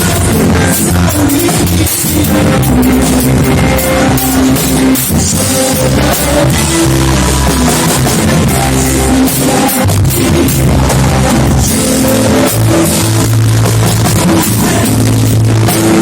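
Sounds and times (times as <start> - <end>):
live band playing worship music: 0.0 - 16.0.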